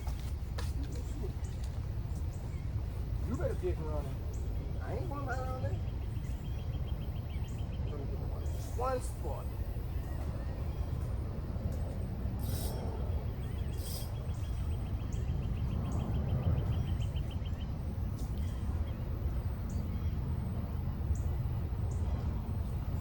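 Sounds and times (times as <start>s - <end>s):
faint bird chirps: 12.4s - 20.2s.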